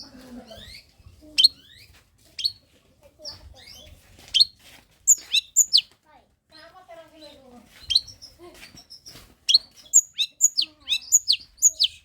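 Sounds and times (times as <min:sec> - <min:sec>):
shrike singing: 0:09.5 - 0:12.0.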